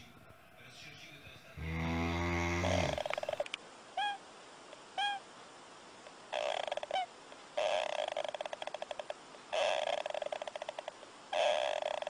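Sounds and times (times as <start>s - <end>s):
animal snoring in rattling bursts: 1.6s - 3.5s, 6.3s - 7.0s, 7.6s - 12.0s.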